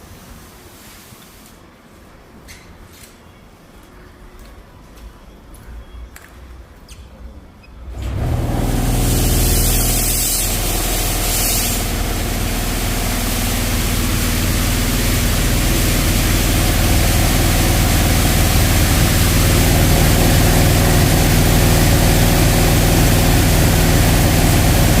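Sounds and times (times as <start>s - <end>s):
car wash pump humming: 7.8s - 25.0s
water spray hissing: 8.5s - 25.0s.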